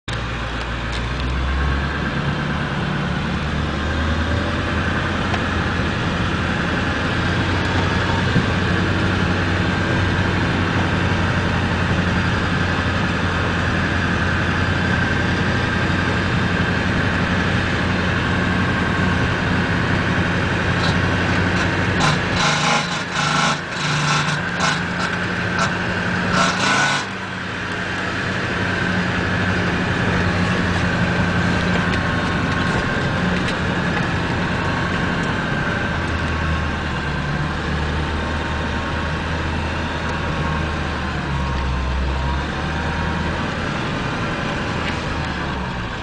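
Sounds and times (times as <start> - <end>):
engine grinding noise: 0.0 - 46.0
engine running: 0.0 - 46.0
engine knocking clatter: 4.7 - 27.4, 28.9 - 41.8.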